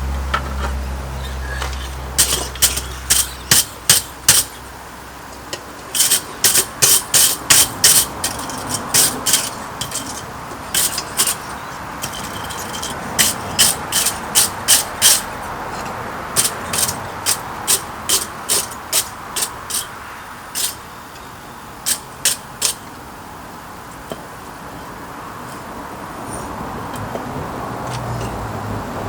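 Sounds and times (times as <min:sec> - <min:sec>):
hammer striking steel on anvil: 0:02.2 - 0:04.6, 0:06.0 - 0:15.3, 0:16.4 - 0:19.9.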